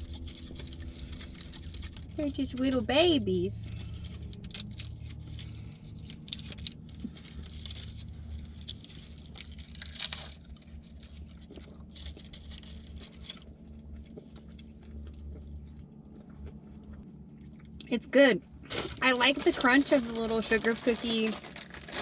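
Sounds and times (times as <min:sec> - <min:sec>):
crunchy chewing: 0:00.0 - 0:02.4, 0:03.6 - 0:17.9
candy wrapper crinkling: 0:00.0 - 0:13.6, 0:18.7 - 0:22.0.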